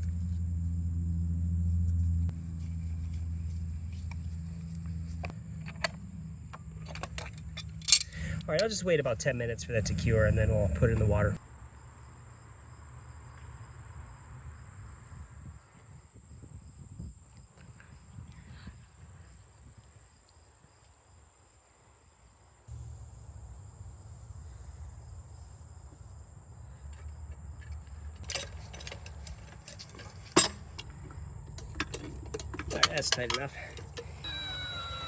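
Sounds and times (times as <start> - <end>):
insect drone: 0.0 - 35.0
low wind rumble: 9.5 - 11.4, 14.3 - 20.0.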